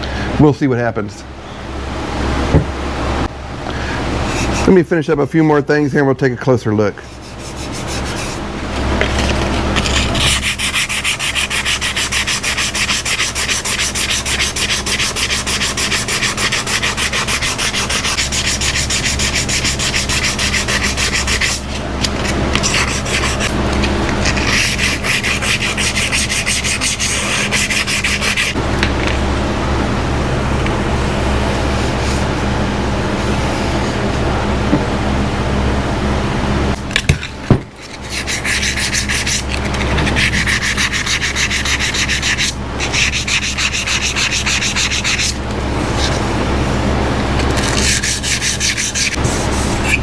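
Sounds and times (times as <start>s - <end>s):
sanding metal jug: 4.2s - 4.8s, 7.1s - 8.4s, 9.1s - 28.6s, 37.8s - 50.0s.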